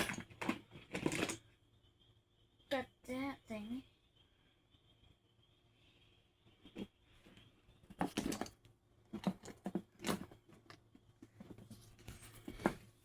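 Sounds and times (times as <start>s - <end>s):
hands rummaging through toys: 0.0s - 1.4s, 7.8s - 13.0s.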